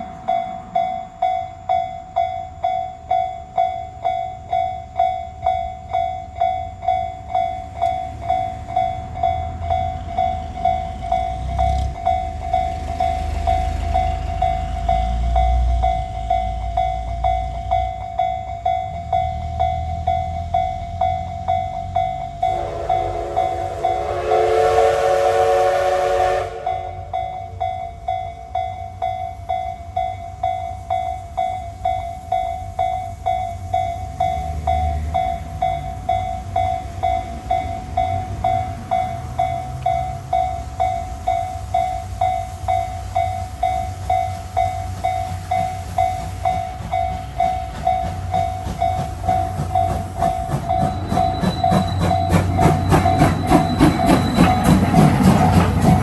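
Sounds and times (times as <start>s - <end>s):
level-crossing alarm bell ringing: 0.0s - 56.0s
low rumble of passing train: 0.0s - 56.0s
train horn: 22.4s - 27.3s.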